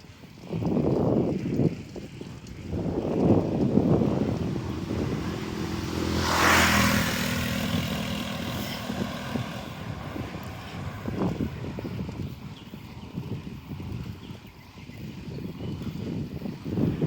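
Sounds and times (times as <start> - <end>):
vehicle passing by: 2.8 - 12.5.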